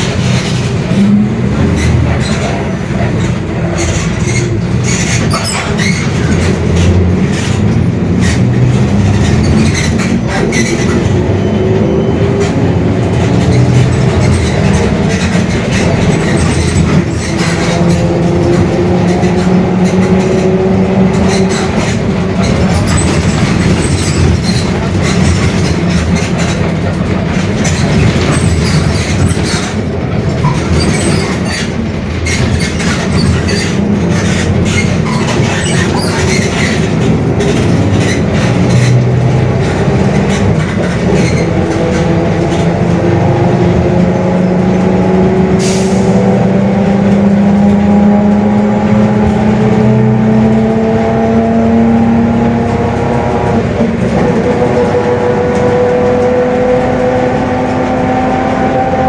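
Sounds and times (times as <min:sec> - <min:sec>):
bus diesel engine: 0:00.0 - 0:59.0.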